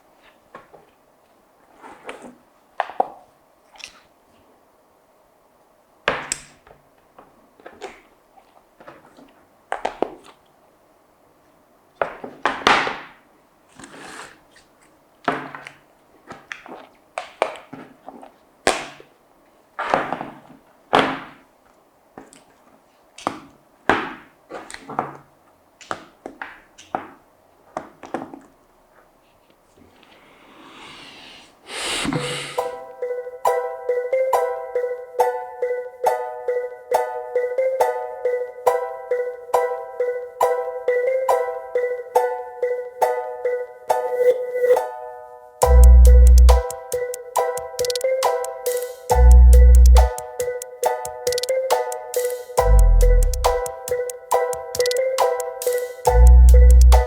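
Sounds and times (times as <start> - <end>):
hiss: 30.2 - 32.7.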